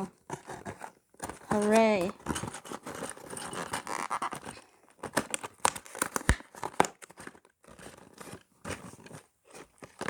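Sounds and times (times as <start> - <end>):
packaging crackling and ripping: 0.3 - 10.0.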